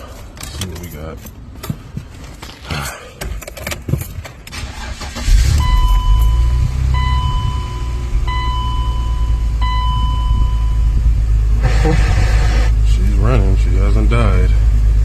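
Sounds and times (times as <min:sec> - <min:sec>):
keys rattling: 0:00.0 - 0:05.0
car engine cranking and idling: 0:00.0 - 0:15.0
car warning tone beeping: 0:04.8 - 0:11.0.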